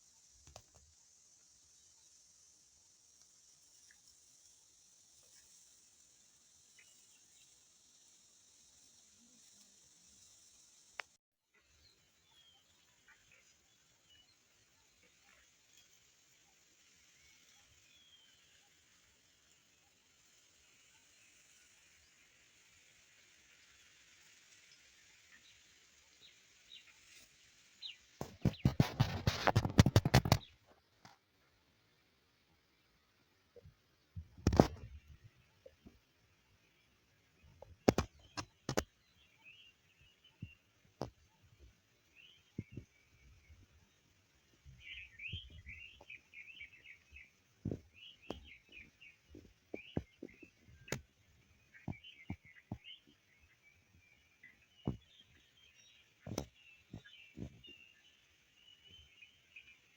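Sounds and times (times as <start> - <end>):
crackling rustle of leaves: 0.0 - 59.9
soft hiss: 0.0 - 59.9
songbirds chirping: 0.0 - 59.9
bird chirps: 37.6 - 59.9.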